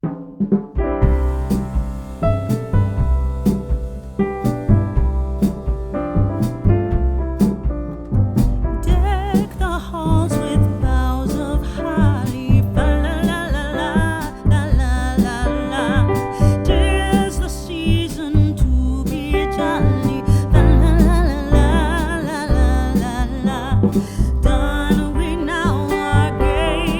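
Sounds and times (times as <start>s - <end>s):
background piano music: 0.8s - 26.9s
deep bass line: 0.8s - 26.9s
vibrato melody like singing: 20.5s - 26.9s.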